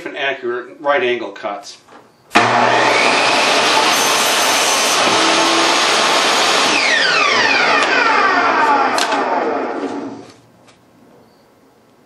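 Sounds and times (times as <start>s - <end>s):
table saw running: 2.3s - 10.3s.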